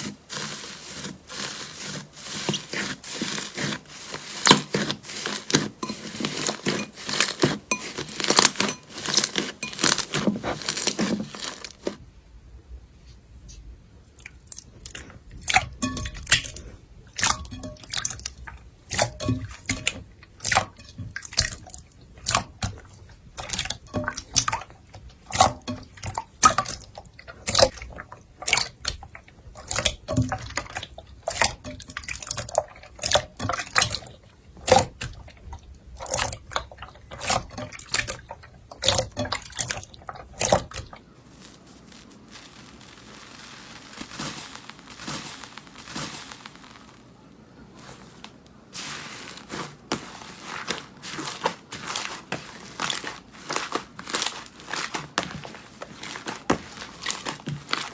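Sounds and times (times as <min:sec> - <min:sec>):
slime squeezed by hand: 0:38.9 - 0:47.2.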